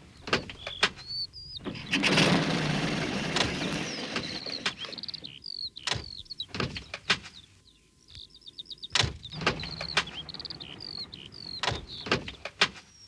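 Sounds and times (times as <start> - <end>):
birds chirping in trills: 0.0 - 13.0
sharp clunks: 8.9 - 12.9.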